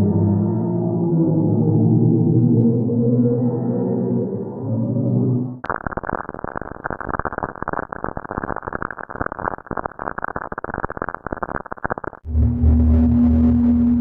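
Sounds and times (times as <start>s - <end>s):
crackling static: 5.6s - 12.3s
low droning tone: 12.3s - 14.0s.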